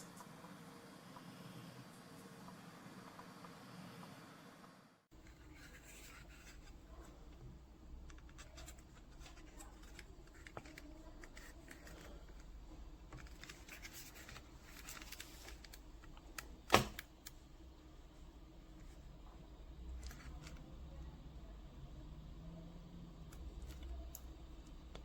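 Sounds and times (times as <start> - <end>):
small handling clicks and scrapes: 5.2 - 17.4.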